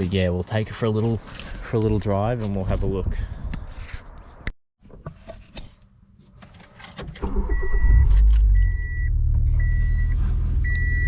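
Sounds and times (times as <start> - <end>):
car engine starting and idling: 6.7 - 11.0.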